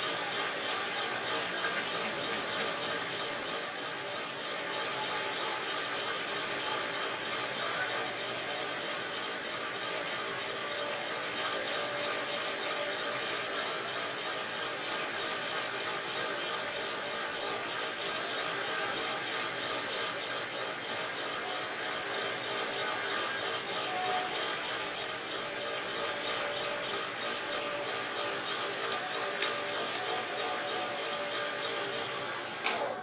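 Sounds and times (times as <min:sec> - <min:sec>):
tool working metal: 0:02.7 - 0:27.9.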